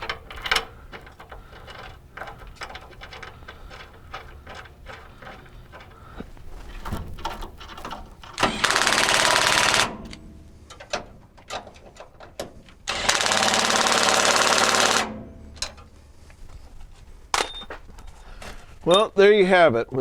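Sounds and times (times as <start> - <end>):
light clicks of tools and metal: 0.0 - 8.4, 10.1 - 12.8
impact wrench running: 8.3 - 10.1, 12.9 - 15.2.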